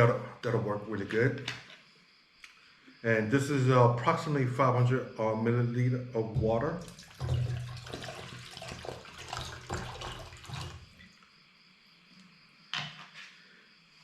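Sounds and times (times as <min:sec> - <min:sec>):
water pouring into a pot: 0:06.4 - 0:11.1.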